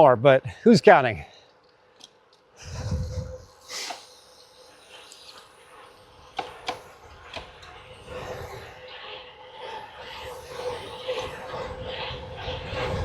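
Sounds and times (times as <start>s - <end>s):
wind buffeting microphone: 2.6s - 3.5s, 10.2s - 13.0s.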